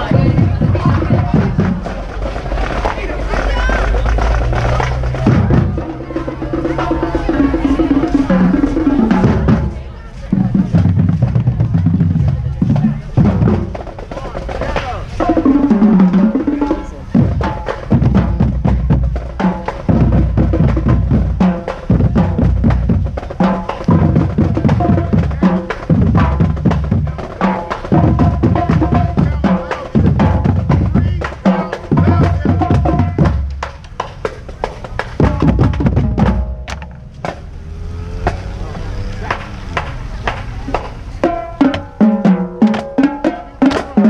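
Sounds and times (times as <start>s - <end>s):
snare drums rattling: 0.0s - 37.5s, 39.2s - 44.0s
bass drum strokes: 3.9s - 14.0s.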